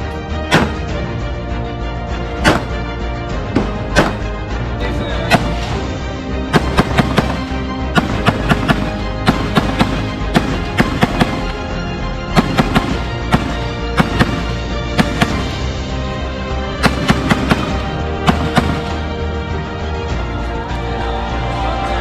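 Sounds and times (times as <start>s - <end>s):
music playing: 0.0s - 22.0s
gunshots: 0.4s - 1.1s, 2.4s - 4.4s, 5.2s - 16.0s, 16.8s - 19.2s.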